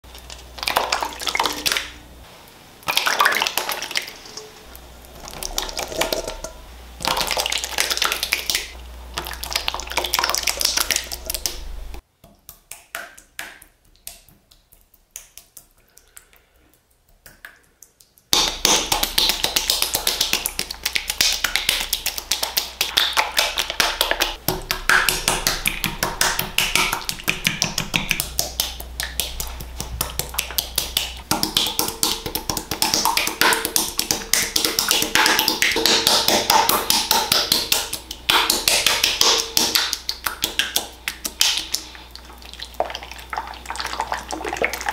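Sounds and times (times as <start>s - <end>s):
clicking and tapping: 18.4s - 41.8s.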